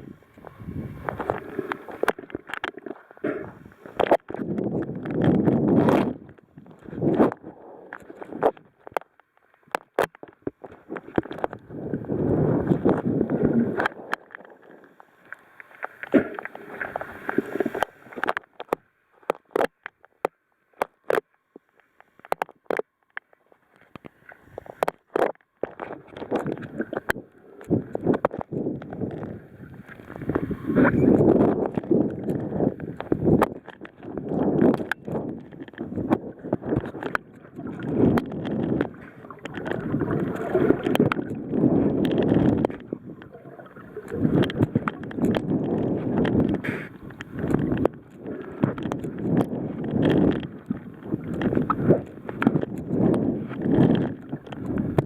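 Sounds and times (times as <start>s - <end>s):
water sloshing and splashing: 0.0s - 20.2s, 20.8s - 55.0s
water rushing: 11.2s - 18.3s, 36.4s - 52.6s
sharp clicks and knocks: 17.8s - 29.3s.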